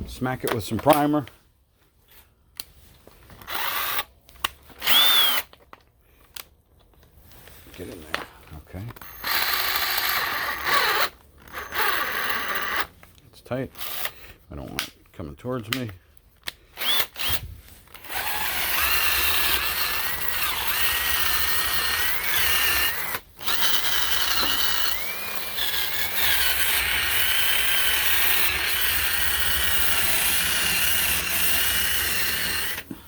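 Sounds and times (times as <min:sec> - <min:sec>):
power tool bit grinding wood: 0:04.8 - 0:05.4, 0:09.0 - 0:12.9, 0:16.8 - 0:17.4, 0:18.0 - 0:33.0.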